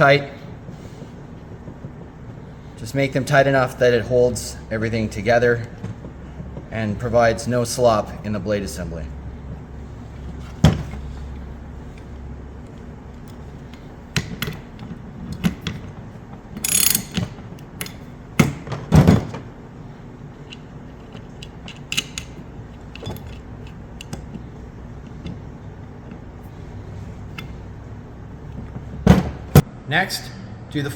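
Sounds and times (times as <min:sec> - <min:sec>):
wrench clicking on metal nuts: 0:16.6 - 0:18.0.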